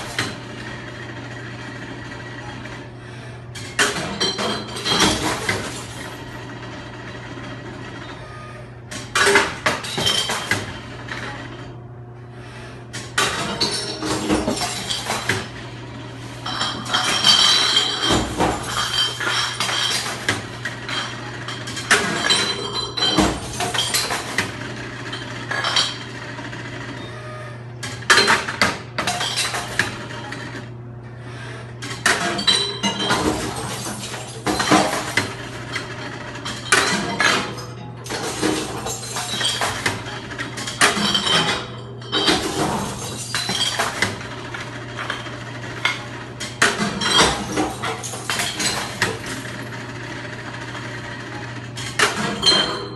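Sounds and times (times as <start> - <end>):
glass bottles smashing: 16.5 - 20.2, 36.5 - 39.8, 40.7 - 44.0, 46.8 - 49.3.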